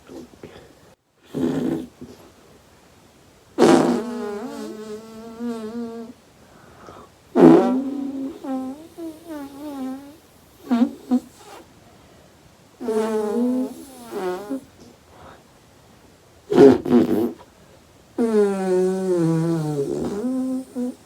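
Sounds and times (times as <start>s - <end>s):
short snorts: 0.1s - 2.4s, 3.6s - 11.7s, 12.8s - 15.4s, 16.5s - 17.5s, 18.2s - 21.0s
person snoring: 12.8s - 14.6s, 18.2s - 21.0s.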